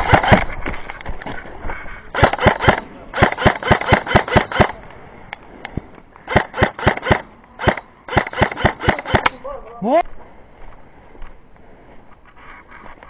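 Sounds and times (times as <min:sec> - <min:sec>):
airsoft gun rapid fire: 0:00.0 - 0:00.4, 0:02.2 - 0:04.8, 0:06.3 - 0:09.4.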